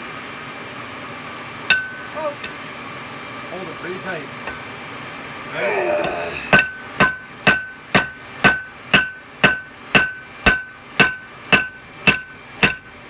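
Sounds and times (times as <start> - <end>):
hammer striking steel on anvil: 1.7 - 2.6, 6.0 - 12.9.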